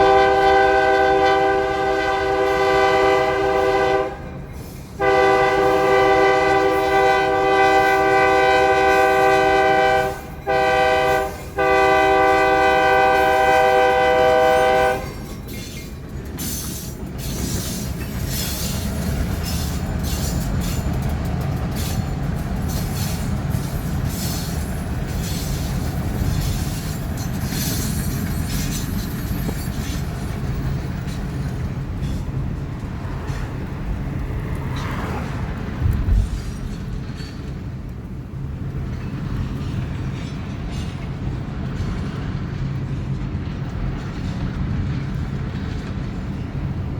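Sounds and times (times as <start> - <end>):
locomotive air horn blasts: 0.0 - 4.4, 5.0 - 15.2
train rumble: 0.0 - 46.9
wheels clacking over rail joints: 0.0 - 46.9.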